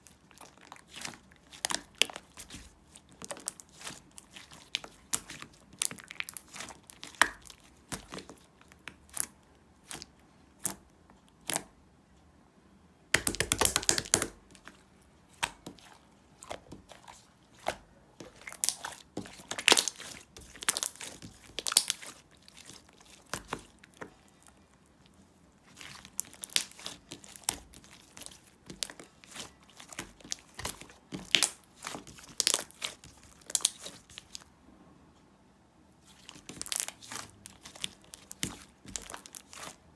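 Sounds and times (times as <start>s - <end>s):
slime squishing with sticky pops: 0.0s - 11.8s, 13.1s - 34.5s, 36.0s - 39.9s.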